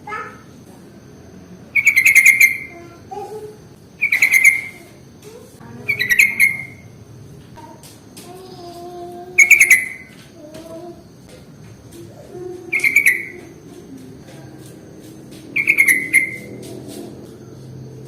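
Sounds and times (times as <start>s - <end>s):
bird calling with bubbling notes: 12.7s - 13.5s.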